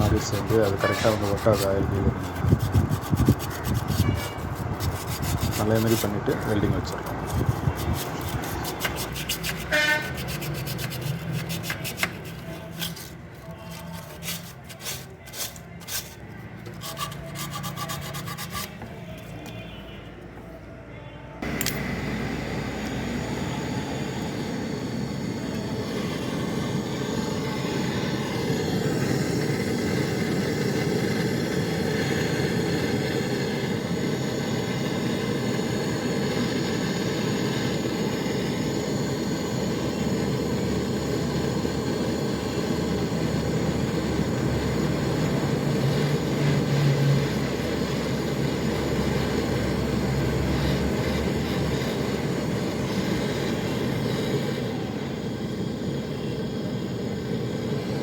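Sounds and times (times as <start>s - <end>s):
gas torch hissing: 0.0s - 19.2s, 21.4s - 58.0s
emery cloth rubbing copper pipe: 0.0s - 19.6s, 40.5s - 54.2s.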